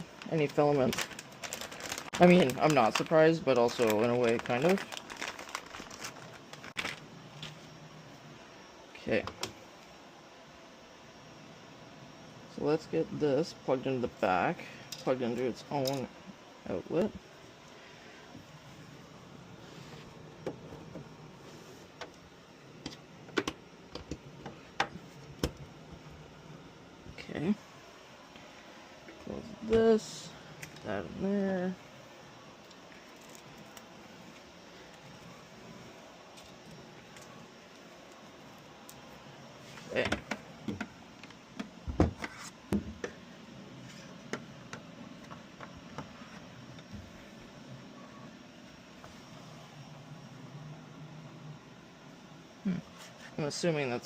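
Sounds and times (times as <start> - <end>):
faint steady hum: 0.0 - 54.0.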